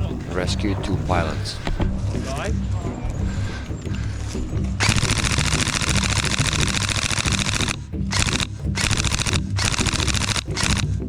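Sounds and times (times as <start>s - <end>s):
airsoft rifle full auto bursts: 4.8s - 10.9s.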